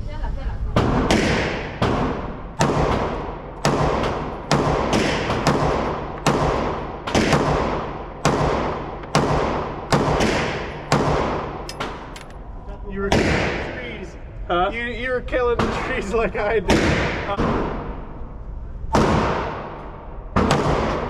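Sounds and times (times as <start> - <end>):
gunshots with echoing tails: 0.8 - 12.1, 13.1 - 13.9, 16.7 - 18.1, 18.9 - 21.0.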